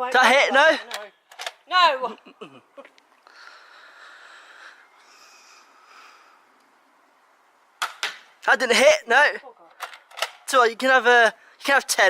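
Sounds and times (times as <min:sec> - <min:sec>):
faint airy noise: 0:02.2 - 0:11.8.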